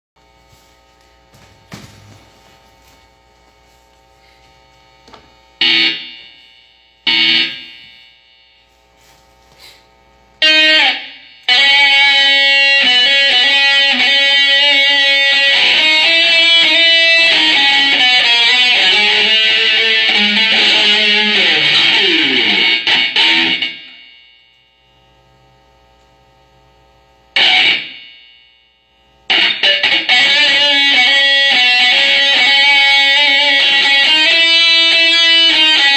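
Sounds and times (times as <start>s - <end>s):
loud electric guitar playing: 5.6s - 6.3s, 7.1s - 7.9s, 10.4s - 24.0s, 27.4s - 28.1s, 29.3s - 35.9s.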